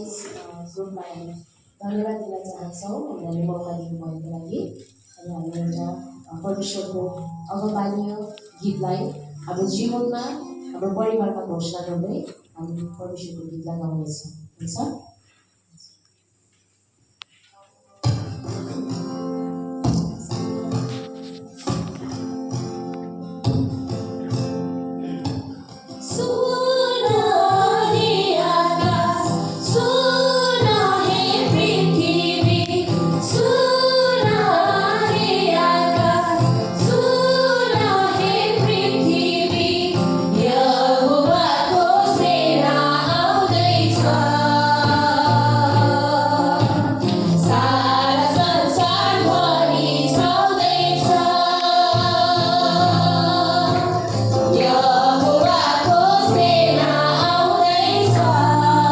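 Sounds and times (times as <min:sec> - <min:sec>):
instrumental accompaniment: 0:17.3 - 0:58.9
women singing worship song: 0:26.0 - 0:58.9.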